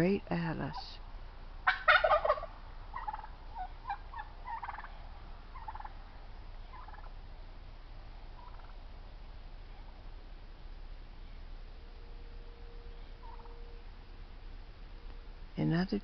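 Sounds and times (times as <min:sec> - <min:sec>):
turkeys gobbling: 0:01.6 - 0:07.3, 0:08.3 - 0:09.0, 0:12.8 - 0:13.9.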